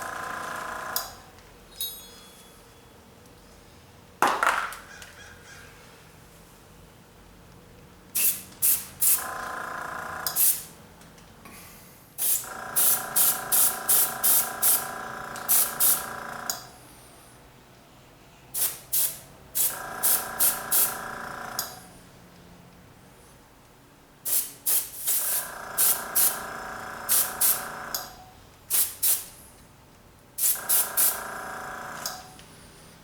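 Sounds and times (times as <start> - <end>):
airbrush spraying in hissing bursts: 8.2 - 9.2, 10.3 - 10.7, 12.2 - 14.9, 15.5 - 16.1, 18.6 - 21.0, 24.2 - 26.5, 27.1 - 27.7, 28.7 - 29.4, 30.4 - 31.2.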